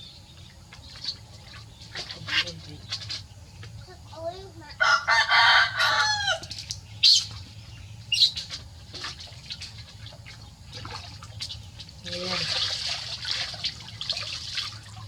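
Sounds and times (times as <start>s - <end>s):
drawn-out crowing call: 4.6s - 6.7s.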